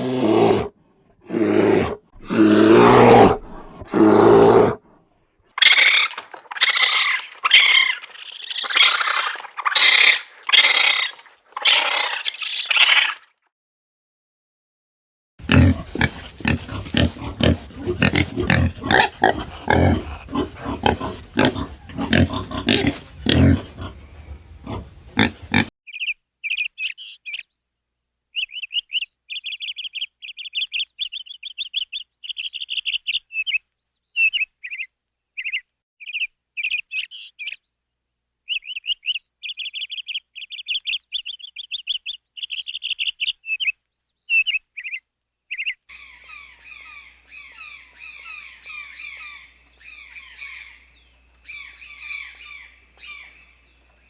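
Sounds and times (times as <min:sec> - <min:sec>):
pig grunting and squealing: 0:00.0 - 0:05.0, 0:05.6 - 0:13.3, 0:15.4 - 0:25.7
small bird chirping: 0:25.9 - 0:27.5, 0:28.4 - 0:37.6, 0:38.5 - 0:54.0.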